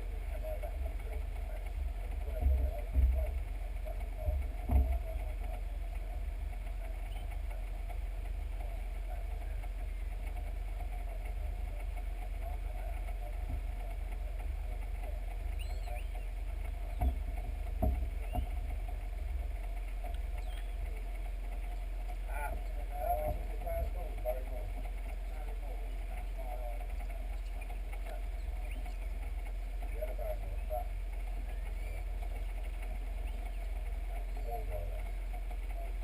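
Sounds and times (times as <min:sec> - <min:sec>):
train running hum: 0:00.0 - 0:36.0
thumps: 0:04.2 - 0:05.6, 0:16.2 - 0:21.0.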